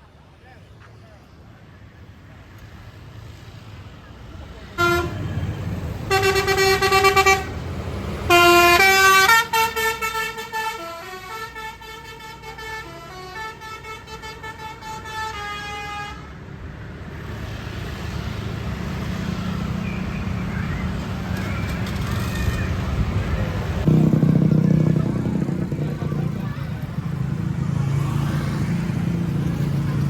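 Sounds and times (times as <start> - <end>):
engine and traffic rumble: 0.0 - 30.0
multi-tone bus horn tune: 4.8 - 16.3.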